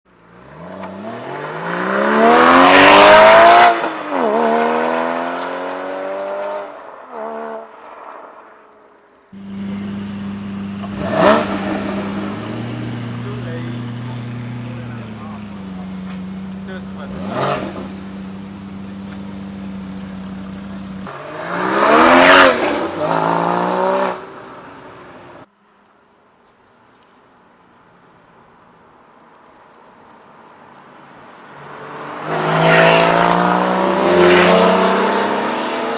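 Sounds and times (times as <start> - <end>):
car engine accelerating: 0.1 - 7.6, 9.4 - 25.2, 31.6 - 35.9.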